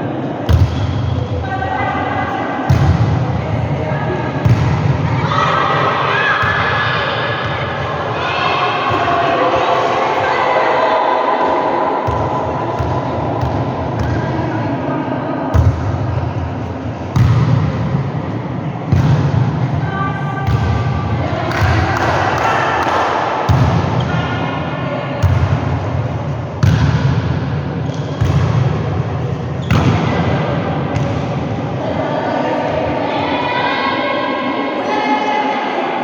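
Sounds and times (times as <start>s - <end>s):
players' voices in a hall: 0.0s - 36.0s
volleyballs struck and bouncing: 0.5s - 1.1s, 2.7s - 3.2s, 17.1s - 17.9s, 18.9s - 19.6s, 21.5s - 24.1s, 26.6s - 29.0s, 29.6s - 31.5s.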